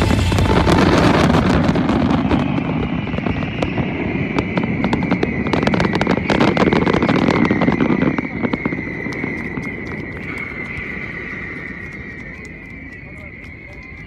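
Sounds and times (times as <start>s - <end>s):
high-pitched falling tone: 0.0s - 3.7s
low rumble: 0.0s - 4.4s
fireworks crackling and popping: 0.0s - 14.0s.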